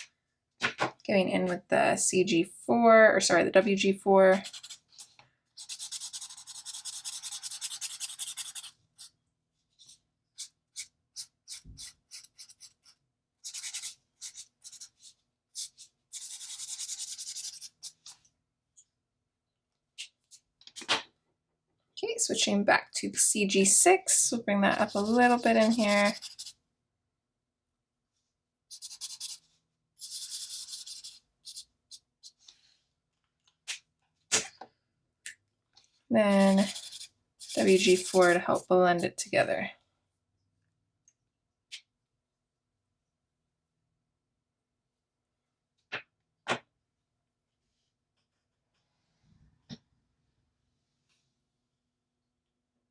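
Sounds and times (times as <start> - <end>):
marker scratching across paper: 4.3 - 9.2, 9.8 - 18.2, 24.7 - 26.6, 28.7 - 32.4, 36.4 - 38.6.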